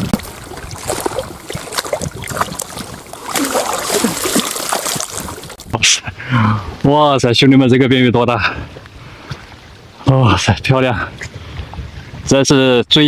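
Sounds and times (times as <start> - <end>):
water splashing and sloshing: 0.0 - 5.8.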